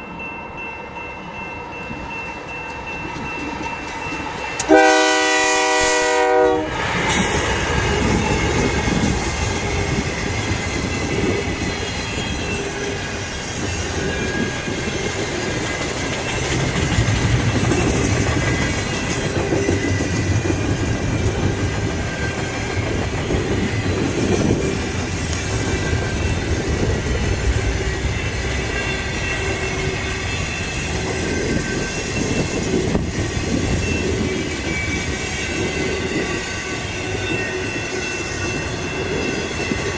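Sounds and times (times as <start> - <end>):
train wheels rumbling on rails: 1.9 - 39.9
locomotive air horn: 4.6 - 6.8.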